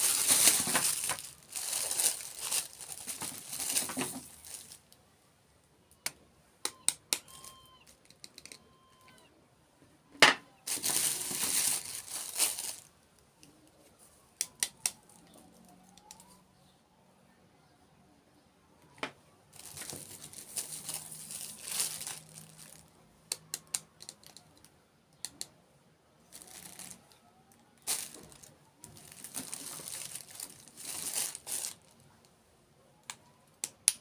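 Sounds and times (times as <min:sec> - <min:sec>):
packaging crinkling: 0:00.0 - 0:04.9, 0:10.7 - 0:12.9, 0:19.6 - 0:22.9, 0:26.3 - 0:27.0, 0:27.8 - 0:32.0.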